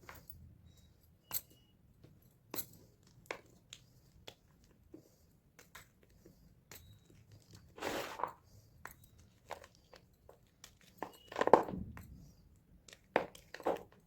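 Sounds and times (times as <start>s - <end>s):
chalk being crushed: 7.8s - 8.4s.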